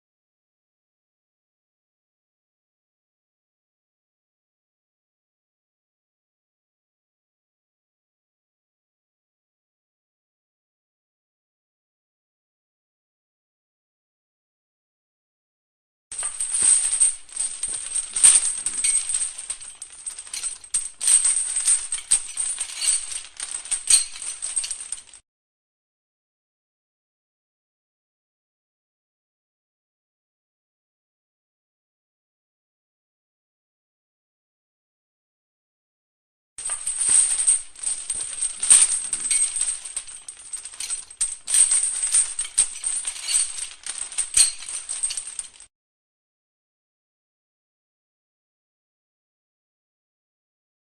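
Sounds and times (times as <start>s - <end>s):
metal chain rattling: 16.2s - 25.2s, 36.6s - 45.7s.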